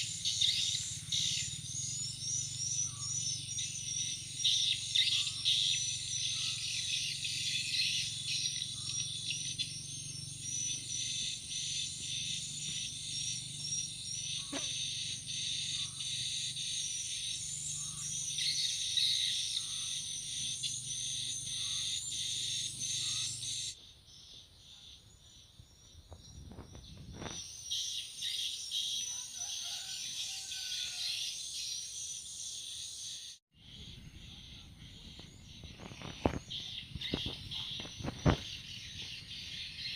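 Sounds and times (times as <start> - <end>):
high insect drone: 0.0 - 23.8, 27.2 - 39.9
insects and birds chirping: 0.0 - 39.9
rustles: 35.1 - 39.3.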